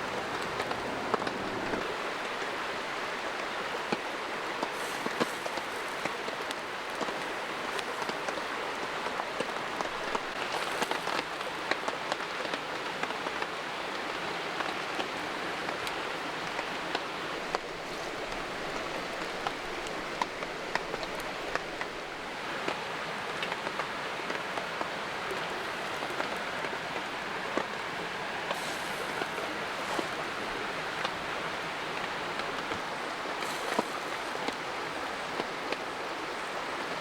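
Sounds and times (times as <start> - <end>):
light rain falling: 0.0 - 37.0
raindrops ticking sharply: 23.3 - 36.4.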